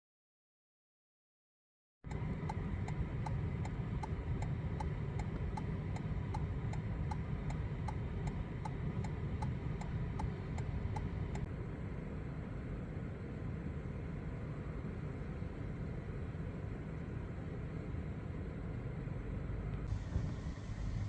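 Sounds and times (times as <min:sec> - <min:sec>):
turn signal ticking: 0:02.1 - 0:11.5, 0:19.8 - 0:21.0
car engine and road rumble: 0:02.1 - 0:11.6, 0:17.7 - 0:21.0.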